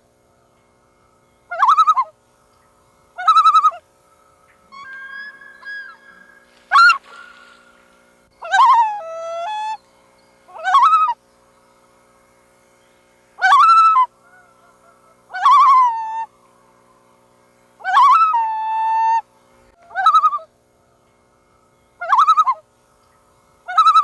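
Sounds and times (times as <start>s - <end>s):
loon calling: 1.5s - 2.2s, 3.2s - 3.9s, 4.5s - 9.8s, 10.5s - 11.2s, 13.4s - 16.3s, 17.8s - 20.5s, 22.0s - 22.7s, 23.7s - 24.0s.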